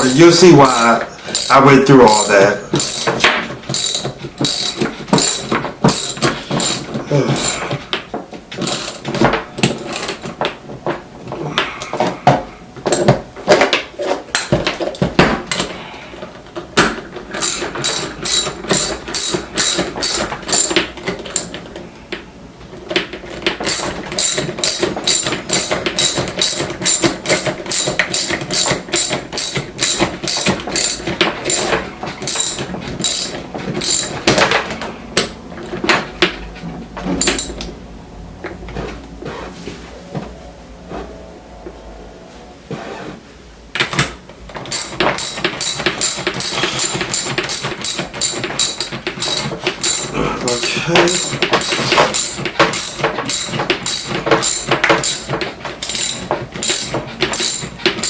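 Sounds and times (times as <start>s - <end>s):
ratchet tool clicking: 44.7s - 57.6s.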